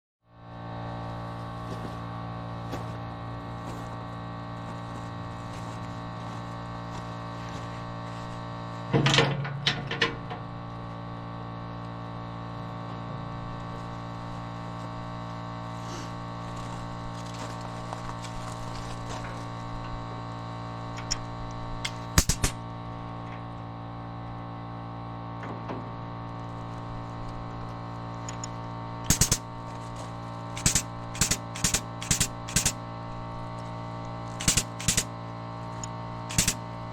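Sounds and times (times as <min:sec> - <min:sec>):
air compressor humming: 0:00.3 - 0:36.9
sharp clicks: 0:21.8 - 0:22.6, 0:29.1 - 0:29.4, 0:30.6 - 0:32.8, 0:34.4 - 0:35.1, 0:35.8 - 0:36.6.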